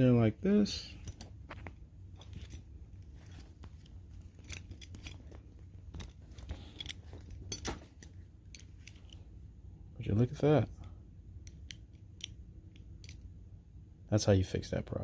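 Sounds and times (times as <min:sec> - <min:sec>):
belt strap rustling: 0:00.0 - 0:09.4
small belt clicks: 0:00.8 - 0:09.3, 0:11.4 - 0:13.3.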